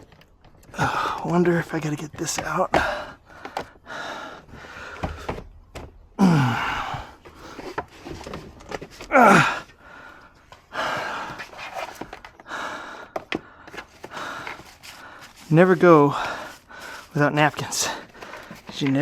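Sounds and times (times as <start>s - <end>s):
man breathing hard: 0.7s - 1.4s, 2.7s - 5.6s, 6.2s - 7.9s, 9.1s - 18.7s
man groaning: 6.2s - 7.2s, 9.1s - 9.7s.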